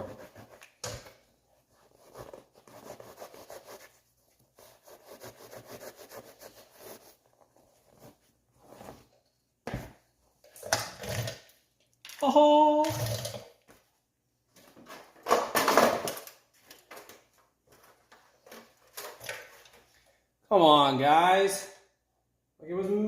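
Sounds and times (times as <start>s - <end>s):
bread knife sawing through foam: 4.6s - 7.1s.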